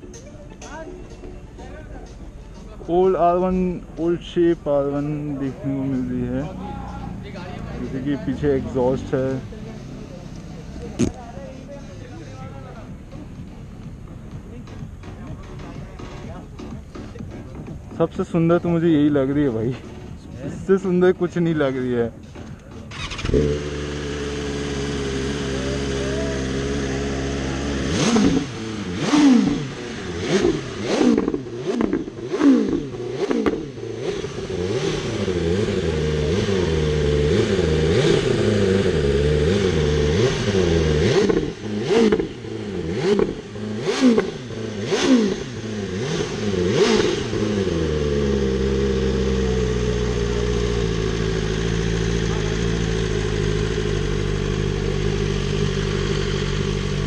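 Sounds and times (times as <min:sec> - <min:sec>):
motorcycle engine idling and revving: 0:00.0 - 0:57.0.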